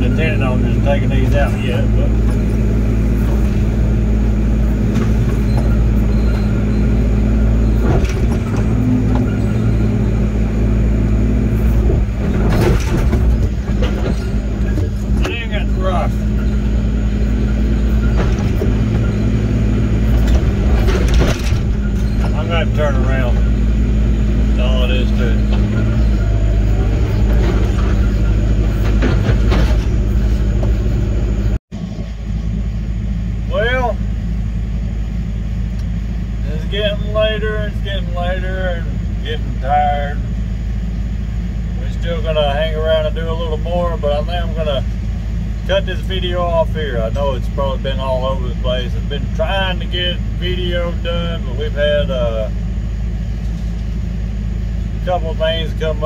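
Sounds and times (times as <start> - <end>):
diesel engine running: 0.0 - 56.0
knocks and clanks: 0.4 - 10.4, 11.3 - 31.6.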